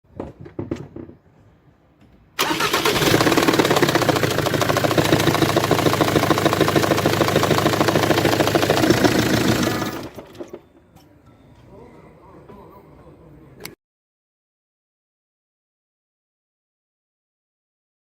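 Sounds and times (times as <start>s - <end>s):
diesel engine ticking: 2.4s - 10.5s.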